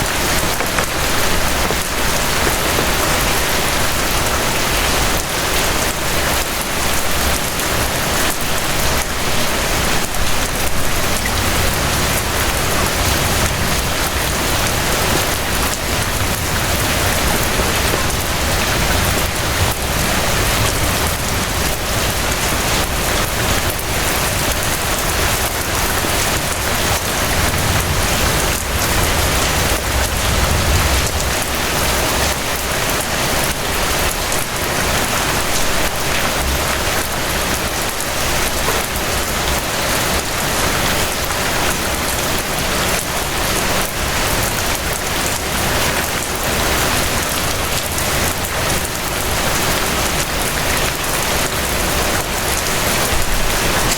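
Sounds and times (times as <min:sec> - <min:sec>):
rain pattering on surfaces: 0:00.0 - 0:53.9.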